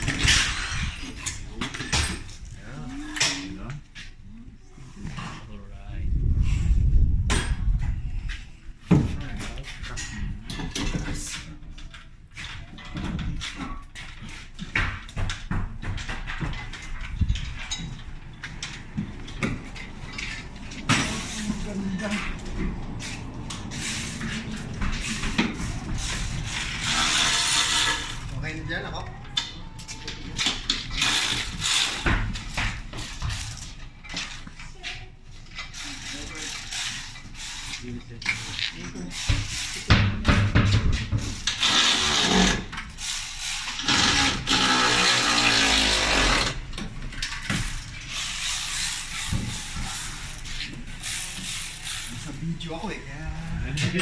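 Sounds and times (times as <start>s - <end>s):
mechanical clattering and ratcheting: 0.0s - 3.5s, 9.8s - 28.7s, 29.3s - 34.5s, 35.4s - 52.6s
machine rattling and whirring: 13.0s - 34.4s, 35.5s - 52.7s.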